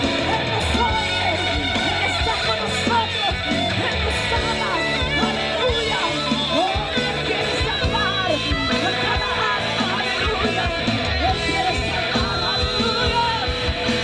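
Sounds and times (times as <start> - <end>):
live band playing: 0.0 - 14.0.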